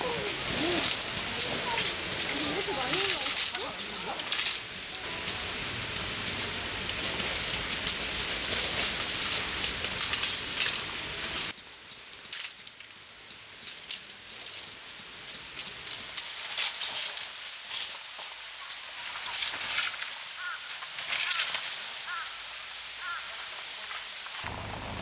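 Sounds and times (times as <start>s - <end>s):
sharp raindrops landing close: 0.0s - 11.5s
steady rain: 0.0s - 25.0s.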